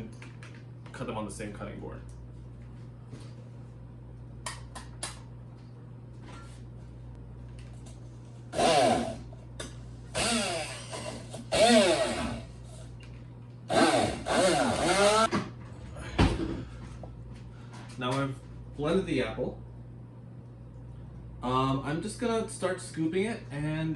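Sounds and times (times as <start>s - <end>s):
immersion blender pulsing: 8.5s - 9.3s, 10.1s - 12.5s, 13.7s - 15.3s.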